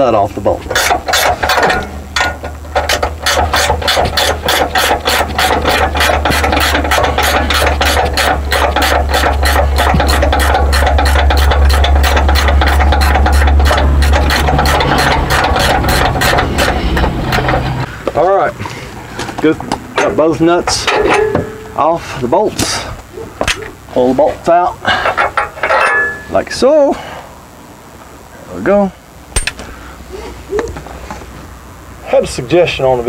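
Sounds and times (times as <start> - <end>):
low hum: 0.0 - 32.5
ratchet wrench clicking: 0.8 - 17.5.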